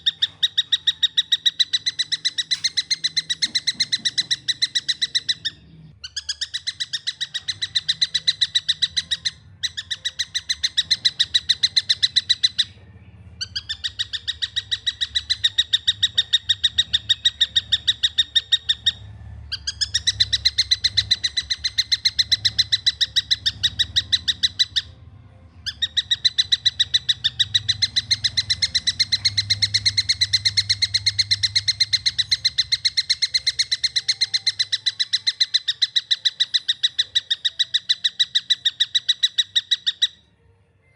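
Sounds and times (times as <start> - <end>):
kingfisher calling: 0.0 - 12.8, 13.4 - 25.0, 25.6 - 40.2.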